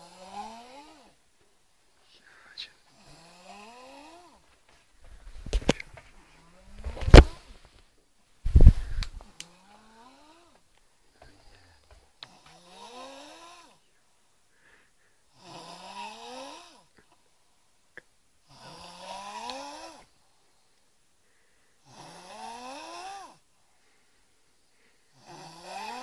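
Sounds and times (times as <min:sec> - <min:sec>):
man snoring: 0:00.0 - 0:01.2, 0:02.6 - 0:04.4, 0:11.3 - 0:13.8, 0:15.3 - 0:17.0, 0:18.5 - 0:20.1, 0:21.8 - 0:23.4, 0:25.1 - 0:26.0.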